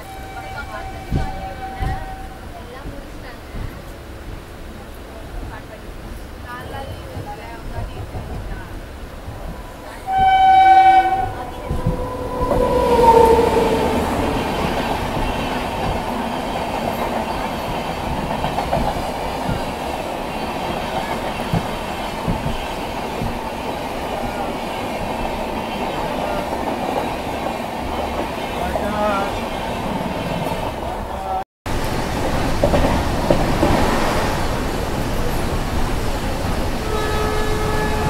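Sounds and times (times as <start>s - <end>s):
train horn blasting: 0.0s - 2.5s, 9.9s - 15.6s, 36.8s - 38.0s
passenger coach rumbling: 0.0s - 38.0s.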